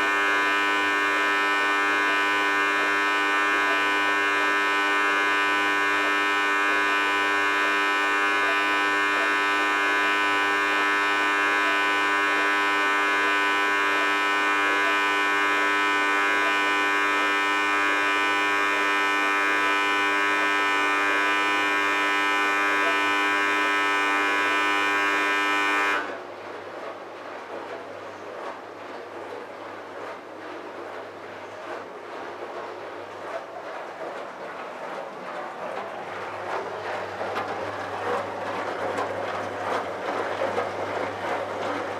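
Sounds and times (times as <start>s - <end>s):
dishwasher rushing water: 26.6s - 41.9s.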